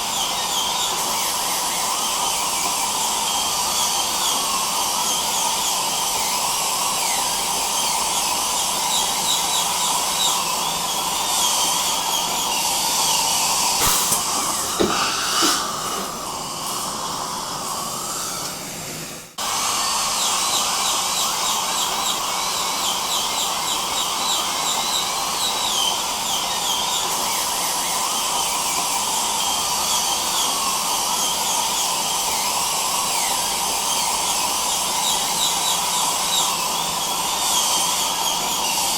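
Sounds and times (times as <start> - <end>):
dental drill whining: 0.0 - 38.9
suction hiss: 13.6 - 18.6.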